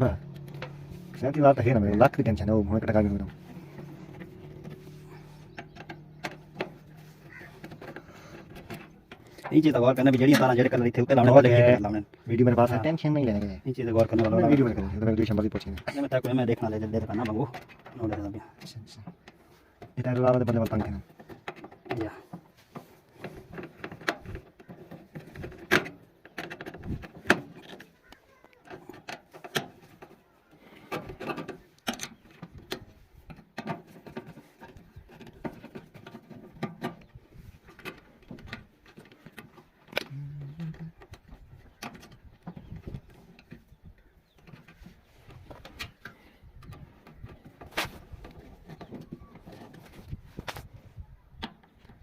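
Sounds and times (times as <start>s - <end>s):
sharp clicks and knocks: 0.0s - 11.1s, 12.6s - 30.2s, 30.8s - 50.7s
low voices: 37.3s - 41.7s.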